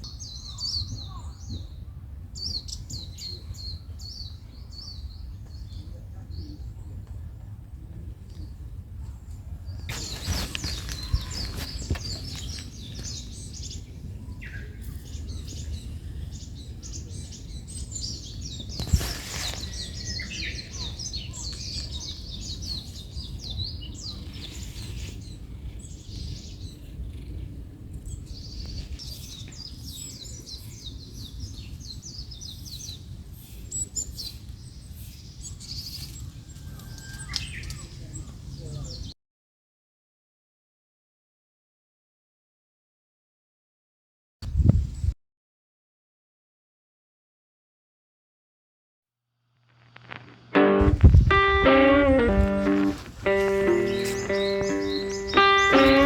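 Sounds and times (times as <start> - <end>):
small birds chirping: 0.0 - 7.0, 8.3 - 39.1, 50.6 - 56.0.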